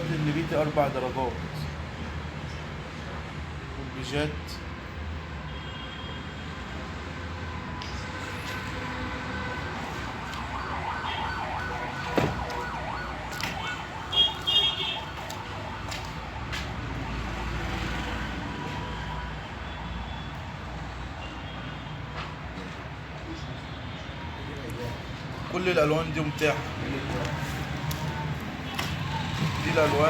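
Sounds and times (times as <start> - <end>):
street noise: 0.0 - 30.0
siren-like tones: 9.4 - 17.3.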